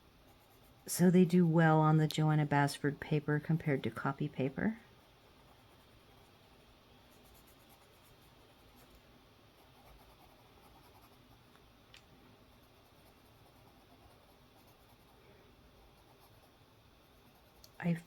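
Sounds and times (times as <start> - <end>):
colored pencil scratching paper: 0.3 - 1.6, 4.9 - 9.0, 9.6 - 11.4, 12.5 - 15.2, 15.8 - 18.0.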